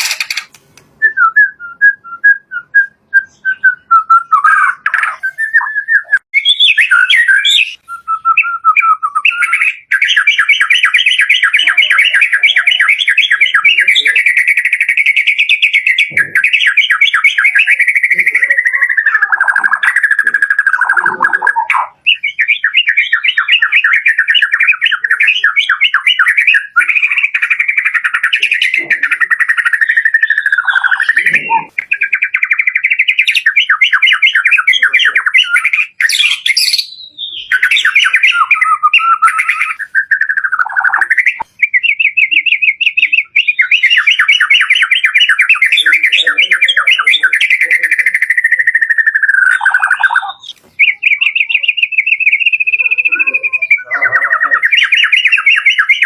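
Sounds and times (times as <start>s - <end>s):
bird singing trilled notes: 0.0s - 56.0s
high sweeping bird whistles: 3.2s - 56.0s.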